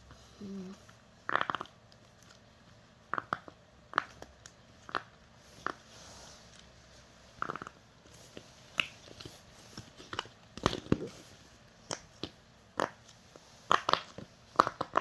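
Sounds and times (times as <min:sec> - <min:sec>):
fidget toy bubbles popping: 0:01.3 - 0:01.8, 0:03.0 - 0:05.8, 0:11.8 - 0:13.0, 0:13.7 - 0:15.0.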